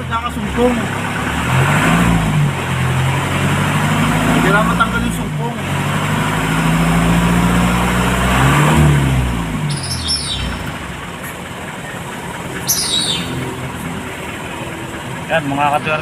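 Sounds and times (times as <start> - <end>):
truck engine revving and idling: 0.0 - 16.0
high bird chirps: 9.7 - 13.7.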